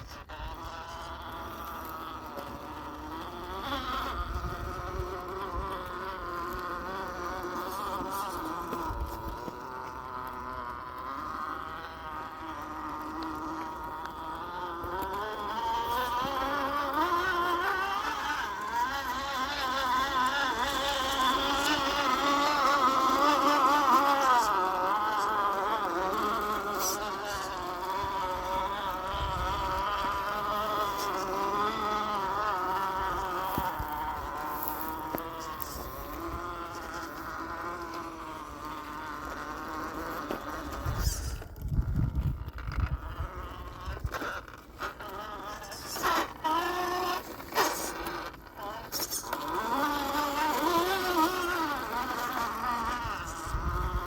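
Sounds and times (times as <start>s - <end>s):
electric motor and gearbox whining: 0.0s - 54.0s.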